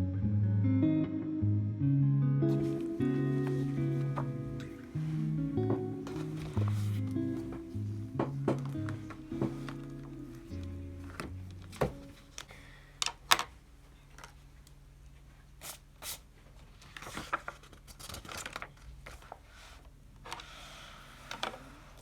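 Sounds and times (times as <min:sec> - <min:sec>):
background music: 0:00.0 - 0:12.2
paper-like rustling: 0:02.5 - 0:12.6, 0:16.0 - 0:22.0.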